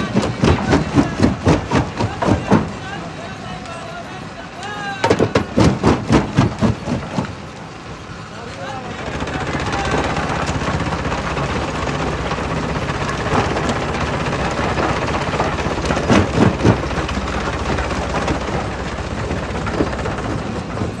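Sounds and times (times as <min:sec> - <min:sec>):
crusher machine drone: 0:00.0 - 0:21.0.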